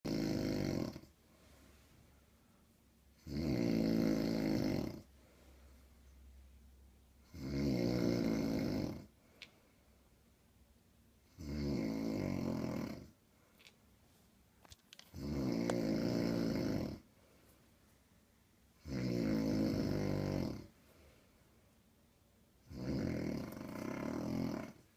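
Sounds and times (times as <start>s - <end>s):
woman snoring loudly: 0.1s - 1.1s, 3.2s - 5.1s, 7.2s - 9.1s, 11.3s - 13.1s, 15.2s - 17.0s, 18.8s - 20.7s, 22.6s - 24.8s.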